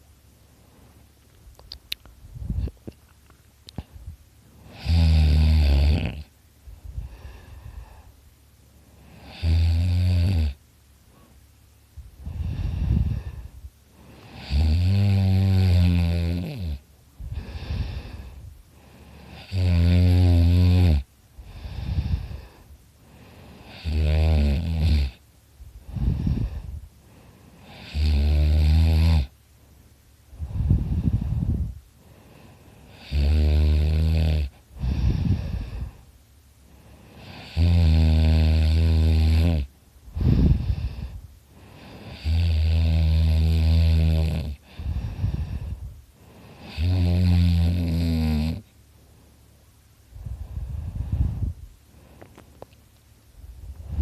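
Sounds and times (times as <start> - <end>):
soft breathy breaths: 0.5 - 1.2, 6.0 - 9.5, 11.0 - 14.7, 17.2 - 19.6, 21.3 - 24.2, 25.1 - 28.4, 29.2 - 33.7, 34.4 - 37.7, 40.0 - 43.3, 44.2 - 47.2, 48.6 - 52.8, 53.4 - 54.0
person snoring loudly: 4.7 - 6.3, 9.1 - 10.6, 14.2 - 18.4, 19.2 - 22.5, 23.6 - 25.2, 27.6 - 29.3, 32.9 - 35.9, 37.1 - 41.2, 41.8 - 45.8, 46.5 - 48.7.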